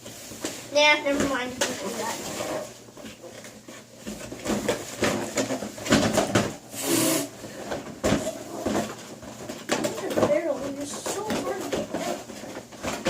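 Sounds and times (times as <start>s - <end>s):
plastic packaging clicks and knocks: 0.4s - 2.0s, 2.9s - 6.6s, 7.5s - 13.0s
hissing scrape: 6.7s - 7.4s.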